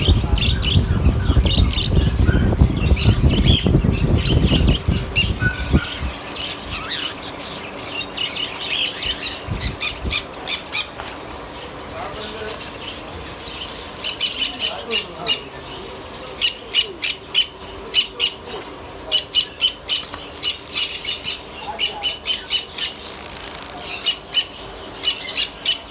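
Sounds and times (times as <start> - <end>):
loud low rumble: 0.0 - 6.2
birds squawking and chirping: 0.0 - 25.9.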